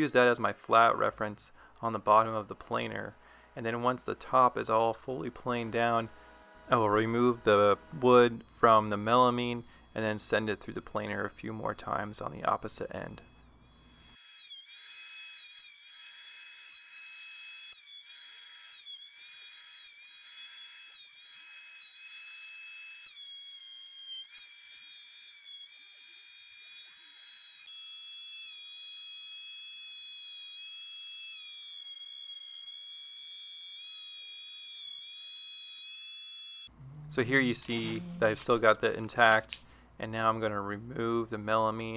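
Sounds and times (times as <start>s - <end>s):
thickness planer whining: 5.5s - 14.2s, 36.8s - 39.6s.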